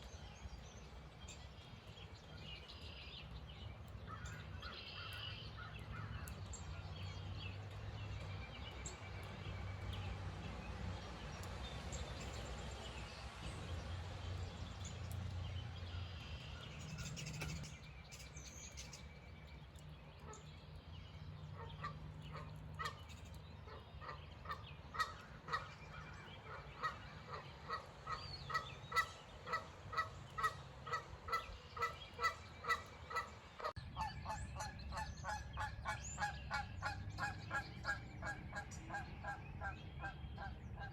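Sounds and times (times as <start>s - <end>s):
birds chirping: 0.0s - 40.9s
birds honking: 21.5s - 40.9s.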